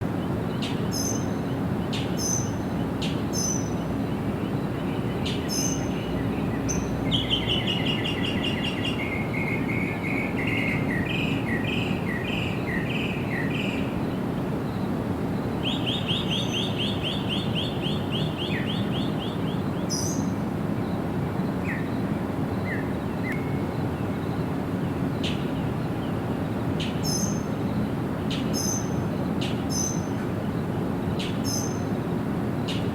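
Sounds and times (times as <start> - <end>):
sparrows chirping: 0.2 - 32.0.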